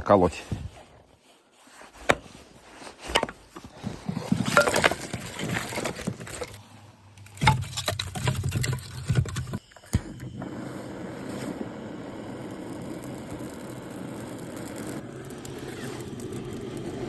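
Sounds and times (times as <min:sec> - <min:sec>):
axe chopping firewood: 0:02.0 - 0:02.4, 0:03.0 - 0:03.8
wood clattering: 0:03.0 - 0:06.6, 0:07.2 - 0:09.6.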